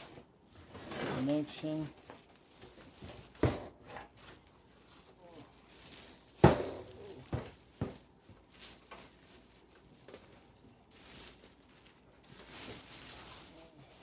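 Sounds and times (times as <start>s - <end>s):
packaging rustling: 0.0s - 14.0s.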